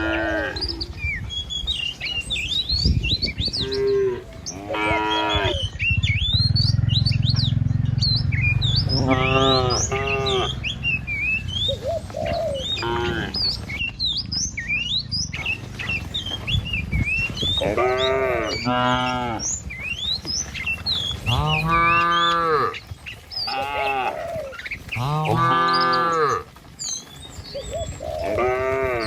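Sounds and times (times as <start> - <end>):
small birds chirping: 0.0 - 29.0
cattle mooing: 3.6 - 5.7, 8.8 - 10.7, 17.6 - 19.6, 21.3 - 22.8, 23.5 - 26.5, 28.2 - 29.0
low rumble: 5.3 - 11.8.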